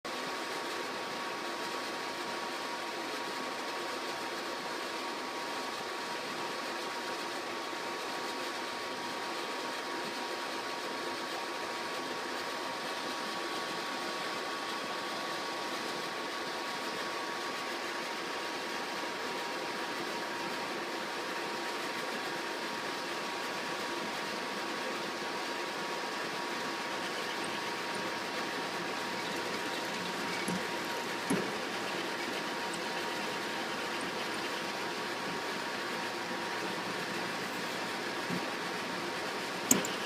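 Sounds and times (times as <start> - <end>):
constant high hum: 0.1 - 40.0
pellet stove whirring: 11.6 - 40.0.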